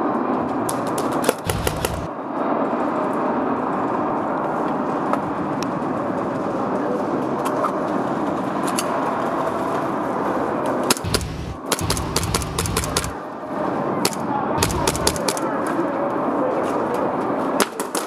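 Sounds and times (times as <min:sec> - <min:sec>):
airsoft guns firing bursts: 0:01.0 - 0:02.1, 0:10.9 - 0:13.2, 0:14.6 - 0:15.5.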